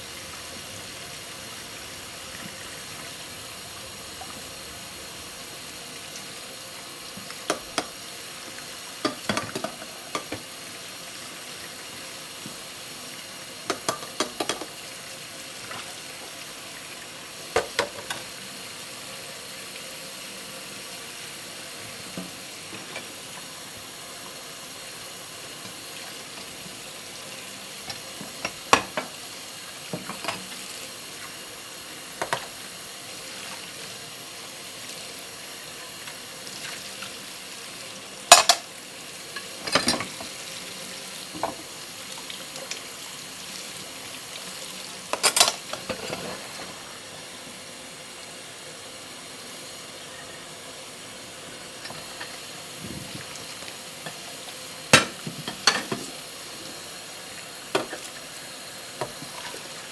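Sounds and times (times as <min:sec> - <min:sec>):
water hissing from tap: 0:00.0 - 0:59.9
dishes and cutlery clinking: 0:38.3 - 0:38.7, 0:39.4 - 0:40.2, 0:45.1 - 0:46.4, 0:55.0 - 0:56.2.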